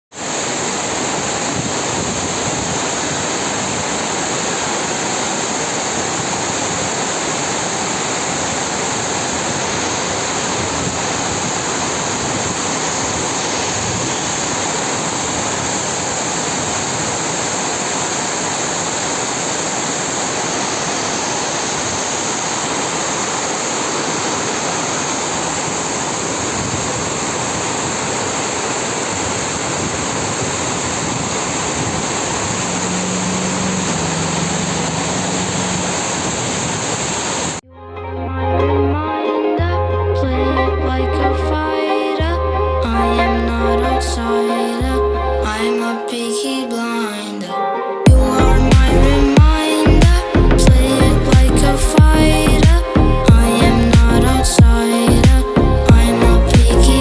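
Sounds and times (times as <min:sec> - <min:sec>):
heavy rain falling: 0:00.1 - 0:37.6.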